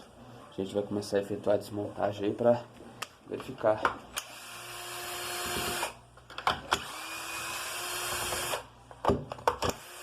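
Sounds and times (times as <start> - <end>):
power drill whirring: 4.2 - 6.0, 6.7 - 8.7, 9.6 - 10.0.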